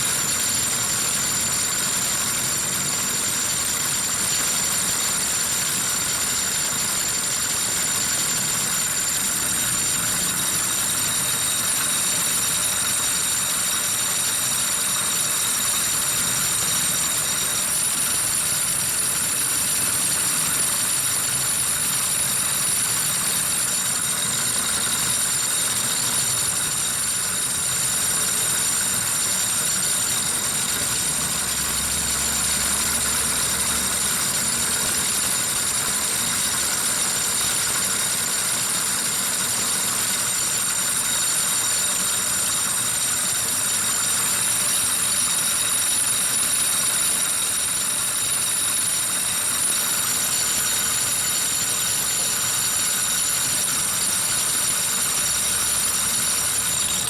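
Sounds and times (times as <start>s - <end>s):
high-pitched whine: 0.0s - 38.3s
engine idling: 24.5s - 38.9s.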